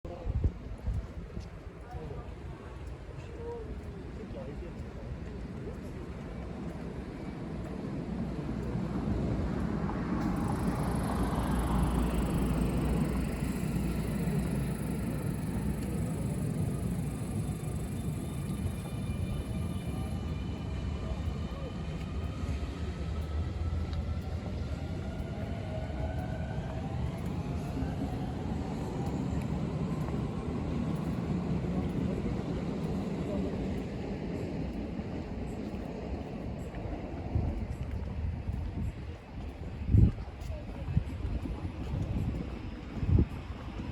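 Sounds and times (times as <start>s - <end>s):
electric train rumble: 0.1s - 43.9s.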